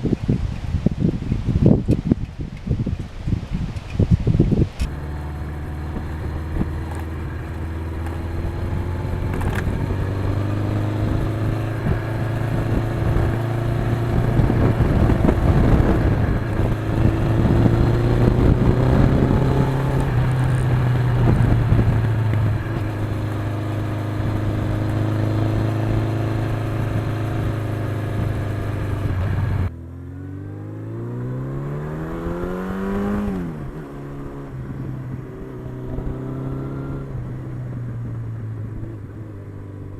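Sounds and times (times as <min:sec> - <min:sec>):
heavy wind rush: 0:00.0 - 0:29.7
motorcycle engine running: 0:04.6 - 0:39.9.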